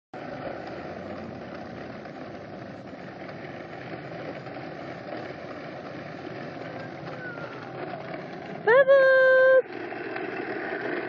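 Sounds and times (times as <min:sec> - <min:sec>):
lawn mower engine running: 0:00.2 - 0:11.0.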